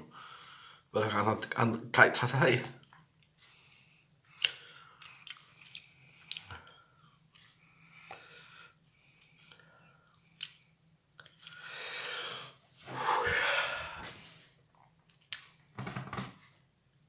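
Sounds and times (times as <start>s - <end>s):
noisy breathing: 0.0s - 0.9s, 3.4s - 10.4s, 11.4s - 14.6s
wet chewing clicks: 4.3s - 8.2s.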